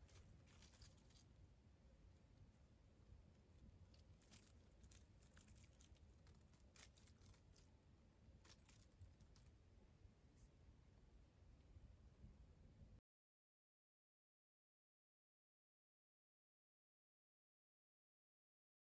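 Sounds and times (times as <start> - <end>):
faint rustles and ticks: 0.0 - 9.6.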